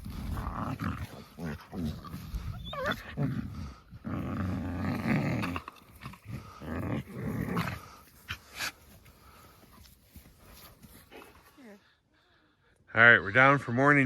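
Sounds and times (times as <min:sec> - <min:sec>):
dog growling: 0:00.0 - 0:09.4.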